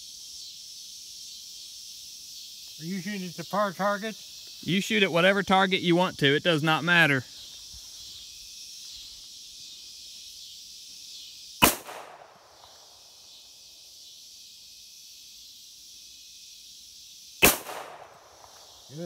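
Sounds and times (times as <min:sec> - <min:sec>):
pistol shot with echo: 0:11.6 - 0:12.7, 0:17.4 - 0:18.7.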